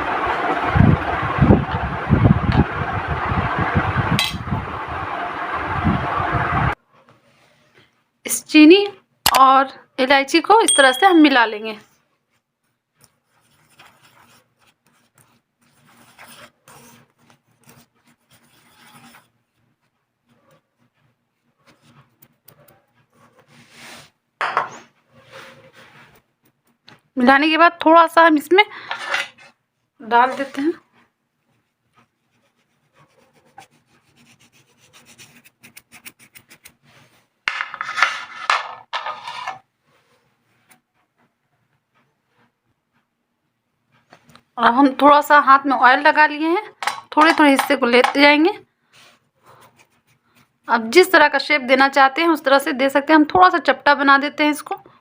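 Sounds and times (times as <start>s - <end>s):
spoon scraping sugar in a dish: 13.2s - 19.4s, 32.4s - 37.2s, 47.1s - 48.4s
spoon scraping sticky candy: 32.4s - 37.1s.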